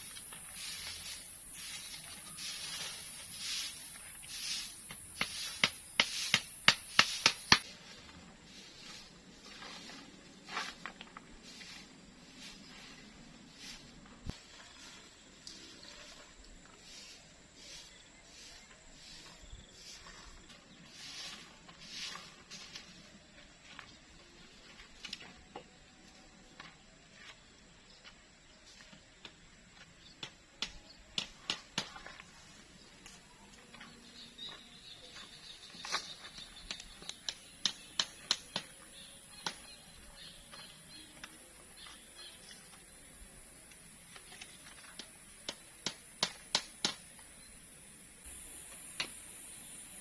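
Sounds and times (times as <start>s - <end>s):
sharp knocks in clusters: 5.2s - 7.6s.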